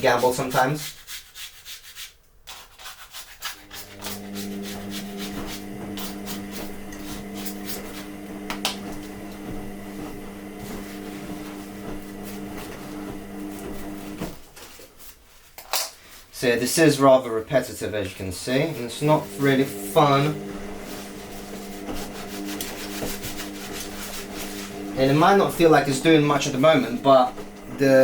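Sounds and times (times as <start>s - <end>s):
kitchen roll scratching on metal sheet: 0.0s - 8.2s, 18.6s - 28.0s
steady low hum: 18.6s - 28.0s.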